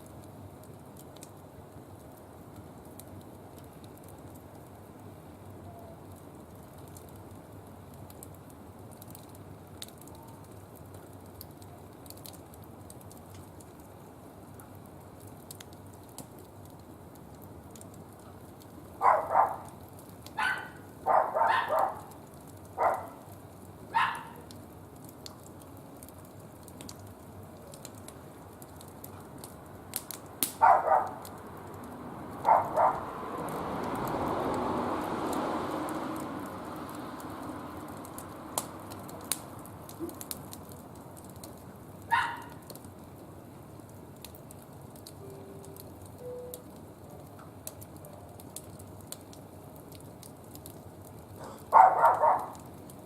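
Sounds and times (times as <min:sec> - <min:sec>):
wood fire crackling: 0:00.0 - 0:53.0
dog barking: 0:19.0 - 0:19.8, 0:20.4 - 0:22.2, 0:22.8 - 0:23.2, 0:23.9 - 0:24.5, 0:30.6 - 0:31.3, 0:32.4 - 0:33.1, 0:42.1 - 0:42.6, 0:51.4 - 0:52.6.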